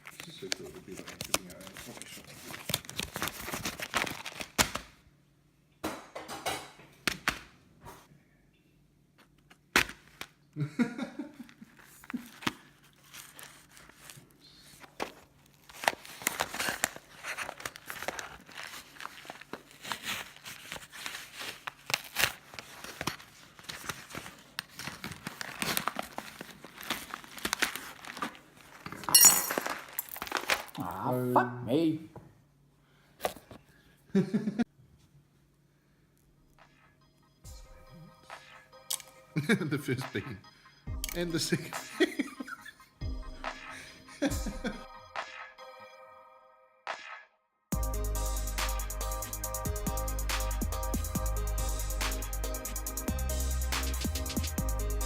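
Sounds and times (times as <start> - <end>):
wrapping crinkling and tearing: 0.0 - 5.0, 11.4 - 30.8.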